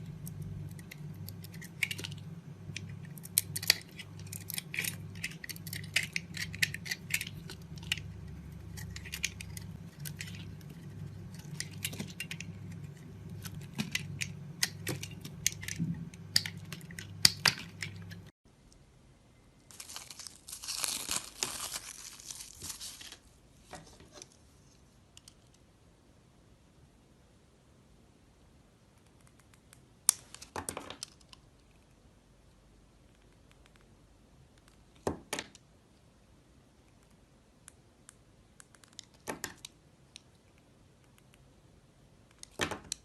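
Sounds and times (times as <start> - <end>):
blade scraping soap: 0.0 - 18.3.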